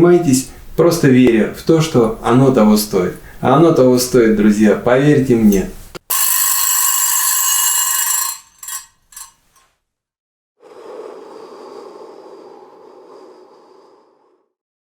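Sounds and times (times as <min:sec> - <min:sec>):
vibraslap rattle: 0:06.0 - 0:09.6
ringing tone: 0:06.1 - 0:09.3.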